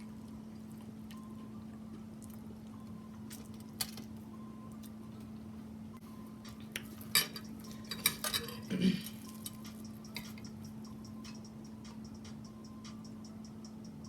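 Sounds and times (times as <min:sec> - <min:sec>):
utensils clinking against a plate: 0:06.7 - 0:10.6.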